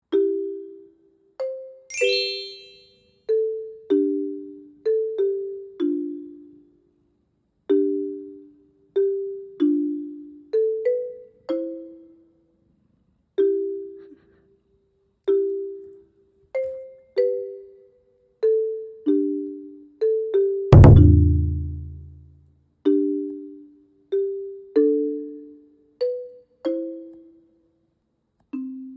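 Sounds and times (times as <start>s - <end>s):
bell-like struck notes music: 1.9s - 3.0s, 20.8s - 22.2s
high shimmering chime: 1.9s - 3.0s.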